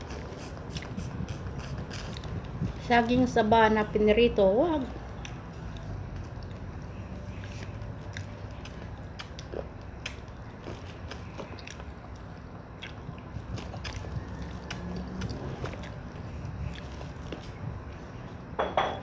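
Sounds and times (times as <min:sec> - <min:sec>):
mouth clicks and smacks: 0:00.0 - 0:02.8, 0:07.4 - 0:17.7
person chewing: 0:00.0 - 0:02.8, 0:05.0 - 0:18.3
steady low hum: 0:00.0 - 0:19.0.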